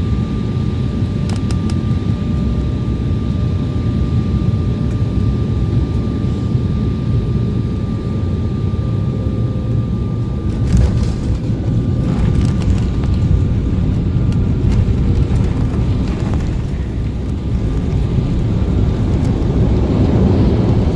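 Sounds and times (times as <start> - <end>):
engine and airflow rumble: 0.0 - 20.9
rattling and clatter: 10.5 - 20.9.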